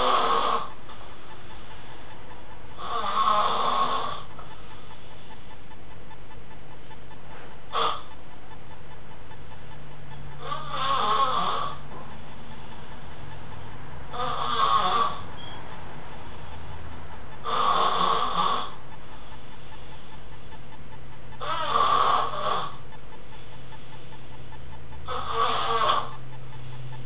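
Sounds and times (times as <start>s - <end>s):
man snoring: 0.0s - 0.7s, 2.8s - 4.3s, 10.4s - 11.8s, 14.1s - 15.2s, 17.4s - 18.8s, 21.4s - 22.8s, 25.1s - 26.1s
steady low hum: 0.0s - 27.0s.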